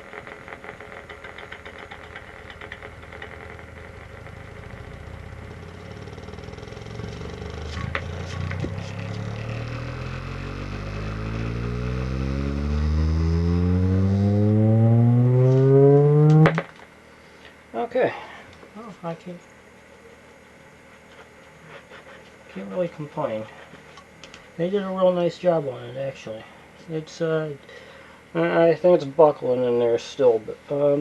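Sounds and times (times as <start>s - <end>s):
subwoofer test-tone sweep: 2.2s - 16.8s.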